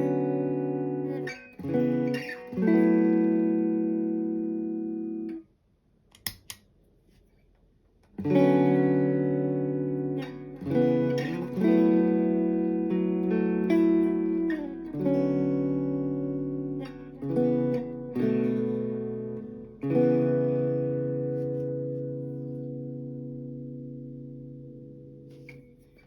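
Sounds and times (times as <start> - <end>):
electric guitar chords strummed: 0.0 - 5.4, 8.2 - 26.0
small clicks: 6.1 - 6.7.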